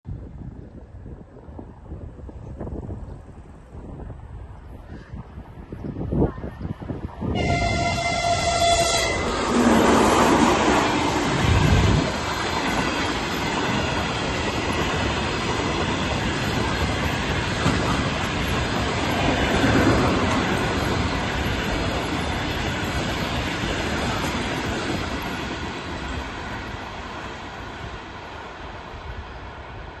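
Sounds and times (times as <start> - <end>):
locomotive horn: 7.3 - 10.0
train wheels clattering: 9.3 - 26.4.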